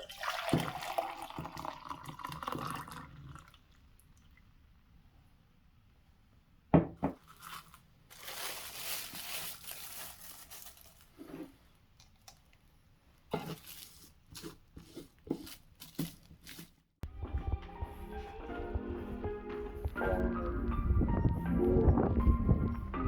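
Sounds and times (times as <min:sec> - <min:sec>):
packaging crinkling and tearing: 0:07.2 - 0:11.2, 0:13.5 - 0:14.5.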